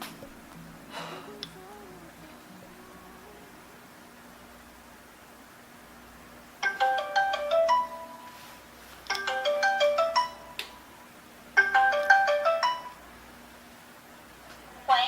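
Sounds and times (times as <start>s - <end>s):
phone ringtone chiming: 6.6s - 8.5s, 9.1s - 10.6s, 11.6s - 13.0s.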